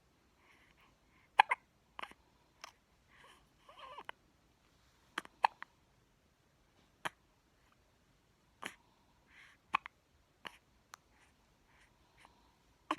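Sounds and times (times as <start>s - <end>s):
baby hiccuping: 1.3s - 2.8s, 5.2s - 5.7s, 7.0s - 7.2s, 9.7s - 10.6s.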